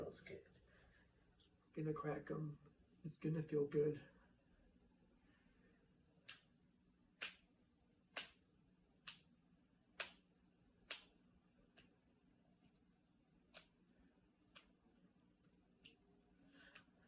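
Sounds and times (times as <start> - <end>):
knuckles cracking: 6.2 - 7.5, 8.1 - 8.4, 9.0 - 12.0, 13.4 - 13.8, 14.4 - 14.9, 15.8 - 17.0.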